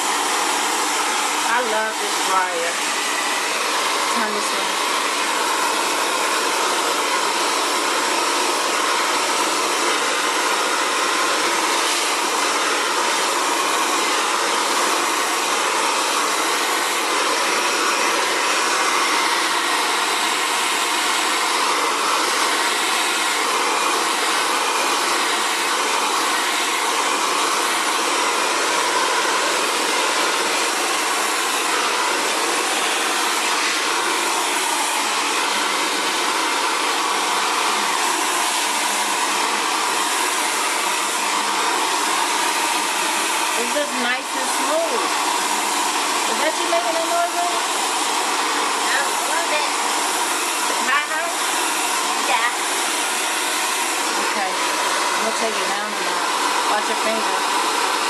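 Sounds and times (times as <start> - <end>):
hair dryer running: 0.0 - 58.0.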